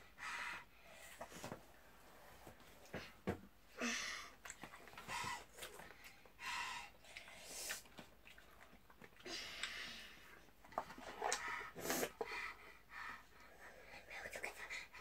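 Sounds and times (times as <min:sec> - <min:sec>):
chewing: 0:07.1 - 0:09.8.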